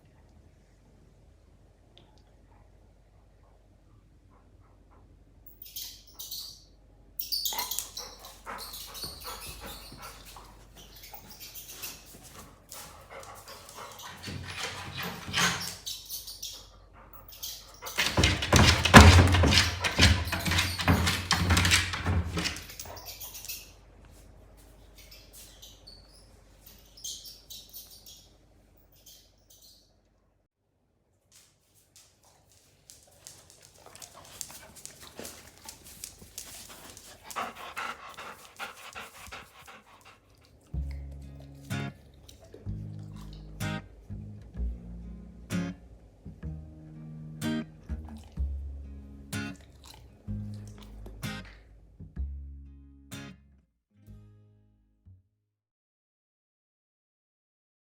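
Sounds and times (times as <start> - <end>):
dog barking and whining: 7.4 - 12.2, 12.8 - 23.4, 33.8 - 40.1
music with low sustained notes: 40.8 - 55.0.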